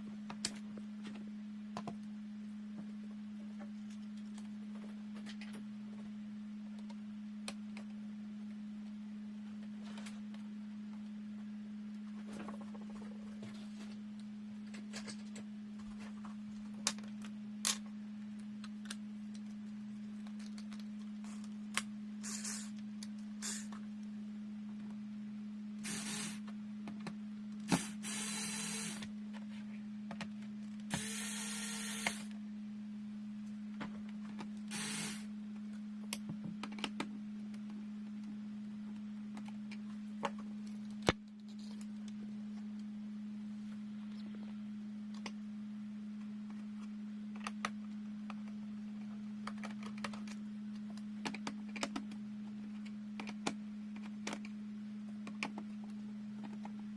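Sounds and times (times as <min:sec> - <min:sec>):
low electrical hum: 0:00.0 - 0:56.9.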